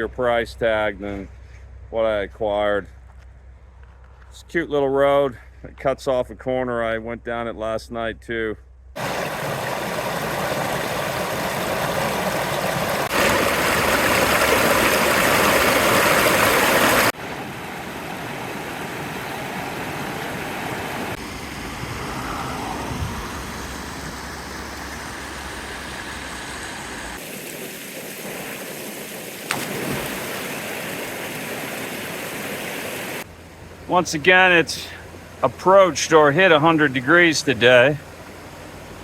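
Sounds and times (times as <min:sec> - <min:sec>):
rushing river water: 0:09.0 - 0:39.0.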